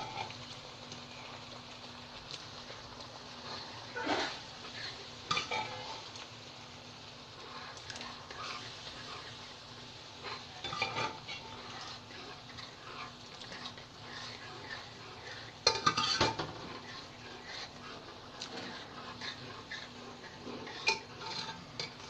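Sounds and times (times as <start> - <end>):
spoon stirring thick food: 10.4 - 22.0.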